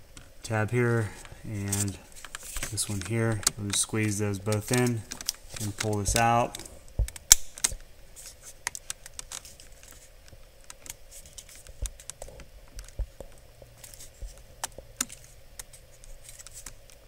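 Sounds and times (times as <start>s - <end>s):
plastic connector clicks and scrapes: 1.2s - 6.7s, 10.7s - 17.0s.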